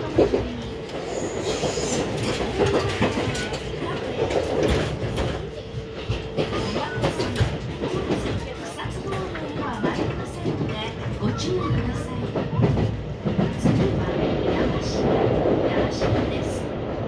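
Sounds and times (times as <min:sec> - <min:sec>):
train wheels clattering over rail joints: 0:00.0 - 0:14.3.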